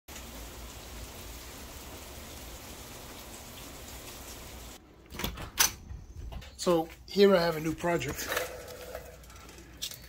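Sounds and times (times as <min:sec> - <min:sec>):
rain-like hiss: 0:00.1 - 0:04.8.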